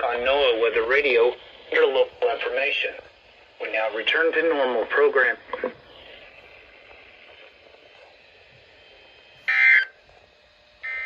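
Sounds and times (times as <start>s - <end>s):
faint radio hiss: 0.0s - 11.0s
loud buzzing data squawk: 9.4s - 10.0s, 10.8s - 11.0s.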